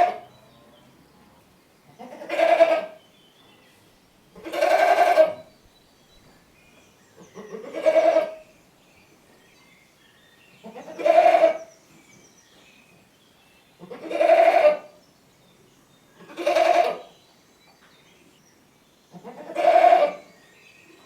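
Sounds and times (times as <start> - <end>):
goat bleating: 2.0 - 2.9, 4.4 - 5.4, 7.4 - 8.4, 13.9 - 14.8, 16.3 - 17.0, 19.2 - 20.2.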